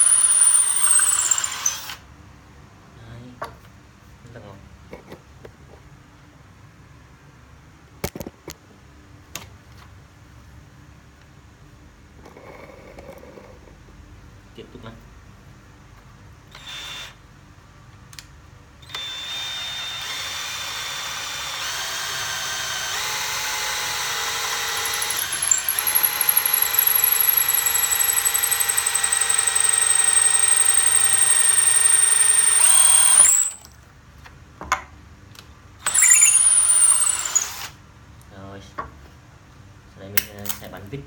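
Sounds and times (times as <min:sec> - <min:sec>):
cordless drill whining: 0:00.0 - 0:02.0, 0:16.5 - 0:17.2, 0:18.9 - 0:33.7, 0:35.8 - 0:37.8.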